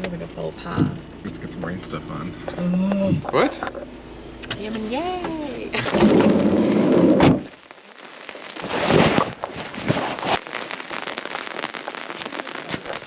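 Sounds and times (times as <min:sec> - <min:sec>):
rain falling: 0:04.8 - 0:13.0.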